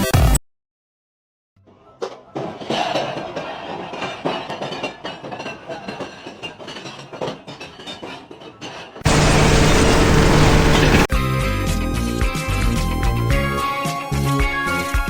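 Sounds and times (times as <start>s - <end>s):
steady rumbling noise: 9.1s - 11.1s.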